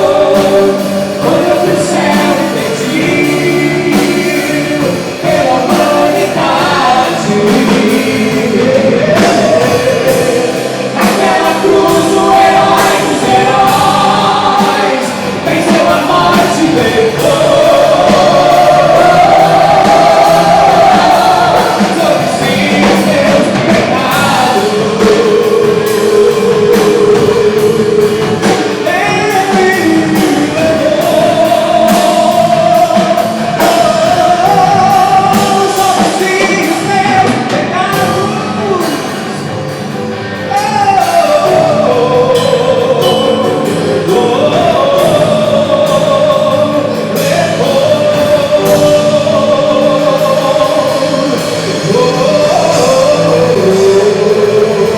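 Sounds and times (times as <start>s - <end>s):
band accompaniment: 0.0s - 54.9s
choir singing held notes: 0.0s - 54.9s.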